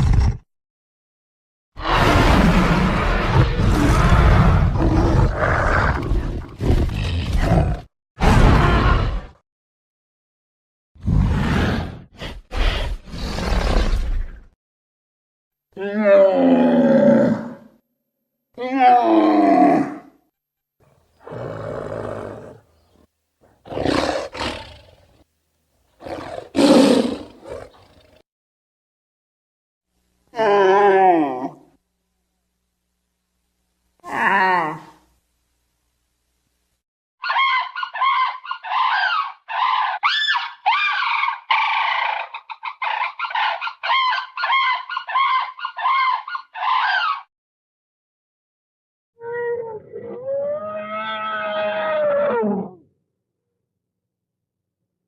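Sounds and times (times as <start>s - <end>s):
monster roars: 0.0s - 0.4s, 1.8s - 9.4s
creature calls rising and falling: 49.3s - 52.8s.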